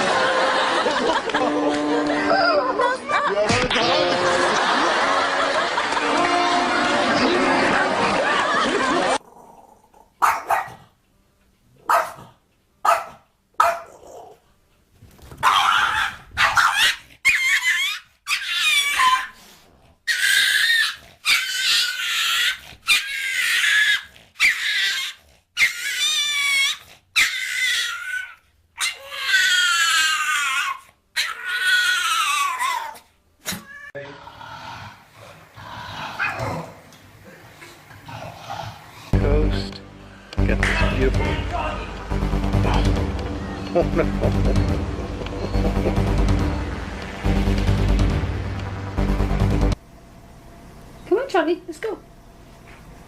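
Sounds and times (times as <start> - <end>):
dog yipping: 10.2 - 10.8, 11.9 - 12.2, 12.8 - 14.0, 15.4 - 19.4, 20.1 - 33.9
dog whining and howling: 15.4 - 19.4, 20.1 - 33.0.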